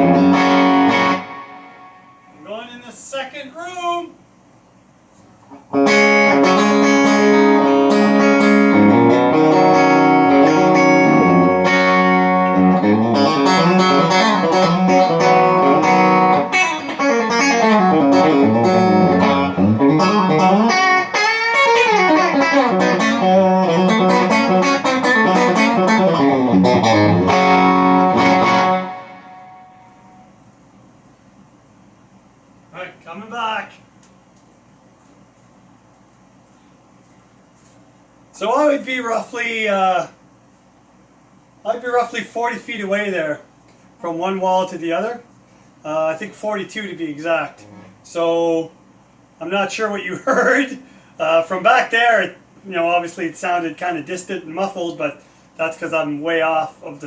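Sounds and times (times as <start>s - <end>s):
electric guitar through amp: 0.0s - 2.1s, 5.7s - 30.3s.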